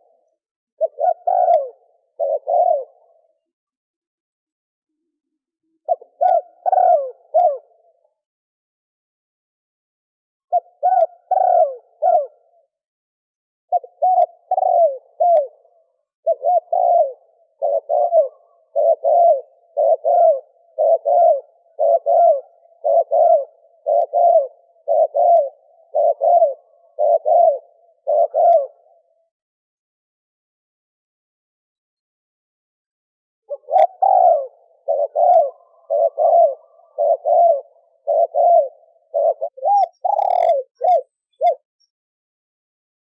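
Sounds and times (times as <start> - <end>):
dove cooing: 0.0 - 3.5, 5.6 - 8.1, 10.5 - 12.7, 13.7 - 29.3, 33.5 - 41.7.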